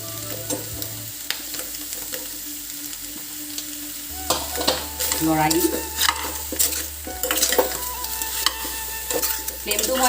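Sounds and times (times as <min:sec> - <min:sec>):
chicken sizzling in a pan: 0:00.0 - 0:10.0
spatula scraping a pan: 0:04.3 - 0:10.0.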